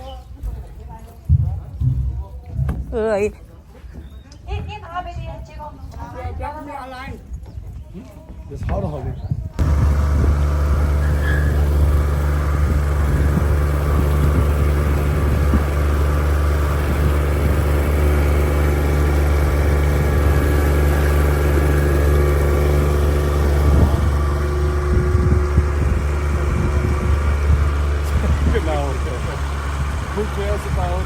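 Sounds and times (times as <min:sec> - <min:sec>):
ship engine droning: 0:09.6 - 0:31.0.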